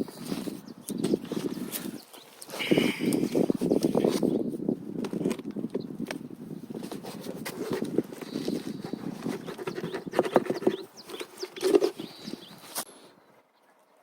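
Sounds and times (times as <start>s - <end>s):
scraping: 6.8s - 12.9s.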